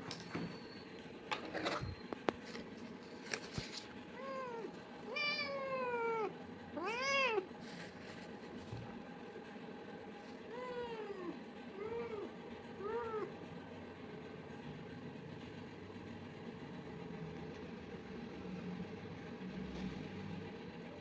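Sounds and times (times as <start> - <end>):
cat meowing: 4.2 - 7.5, 10.5 - 13.3.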